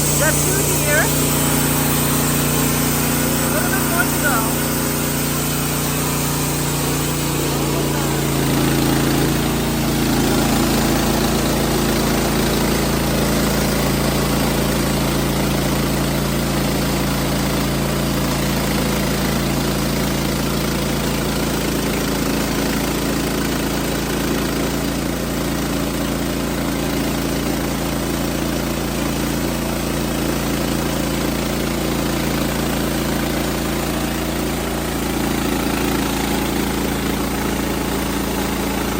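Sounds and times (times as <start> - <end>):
band blade cutting log: 0.0 - 11.4
portable sawmill running: 0.0 - 38.9.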